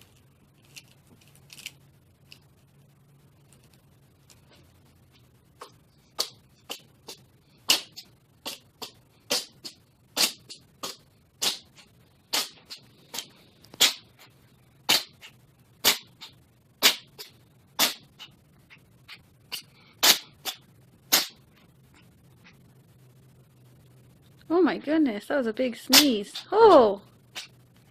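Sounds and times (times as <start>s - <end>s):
cat sneezing: 14.9s - 18.1s, 19.5s - 21.4s.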